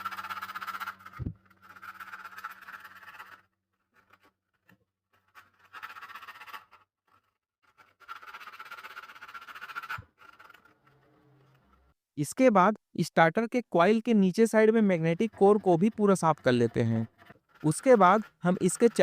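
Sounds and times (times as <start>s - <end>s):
abrasive rasping on metal: 15.0s - 19.0s.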